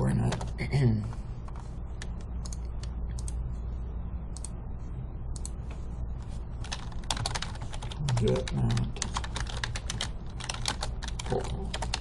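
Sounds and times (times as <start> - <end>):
steady low hum: 0.0 - 12.0
keyboard typing: 1.1 - 3.4, 5.4 - 12.0.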